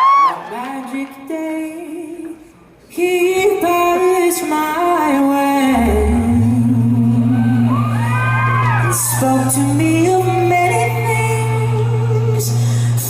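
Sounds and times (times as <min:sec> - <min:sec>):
deep bass voice low note: 0:05.7 - 0:13.0.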